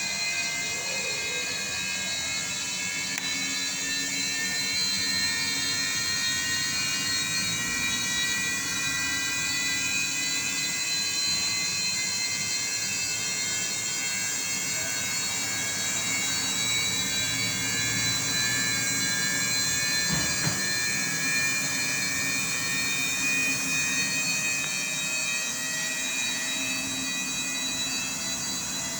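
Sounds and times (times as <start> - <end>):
washing machine motor whine: 0.0 - 28.9.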